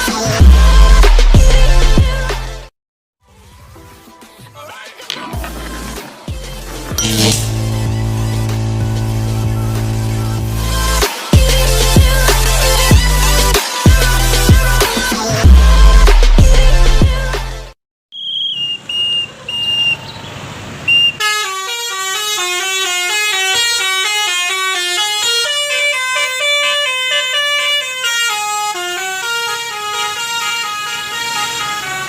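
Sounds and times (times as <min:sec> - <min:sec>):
musical air horn melody: 0:06.6 - 0:15.0, 0:21.2 - 0:32.0
short high beeps: 0:07.0 - 0:08.0.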